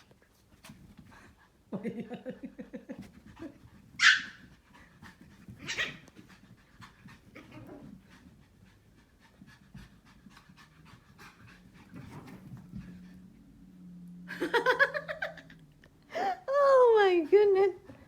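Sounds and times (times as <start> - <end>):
puppy panting: 2.9 - 13.5.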